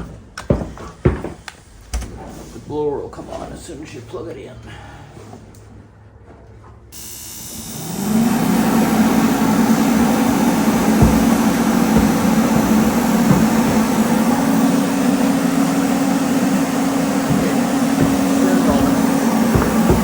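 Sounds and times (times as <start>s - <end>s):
propane heater blower running: 7.0s - 20.0s.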